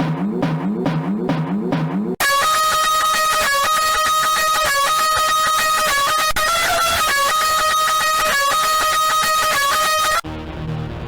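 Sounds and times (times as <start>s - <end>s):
buzzy lead holding long notes: 2.2s - 11.0s.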